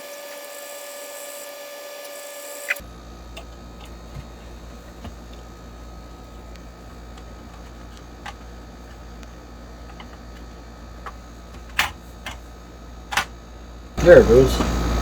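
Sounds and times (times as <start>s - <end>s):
small parts clicking and tapping: 2.7s - 5.5s, 6.3s - 13.4s
steady low hum: 2.8s - 15.0s.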